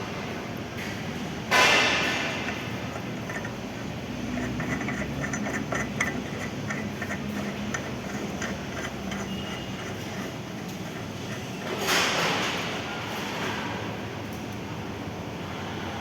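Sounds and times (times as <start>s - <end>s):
pipe-threading machine motor hum: 1.8s - 12.6s
metallic ticks: 2.4s - 11.8s.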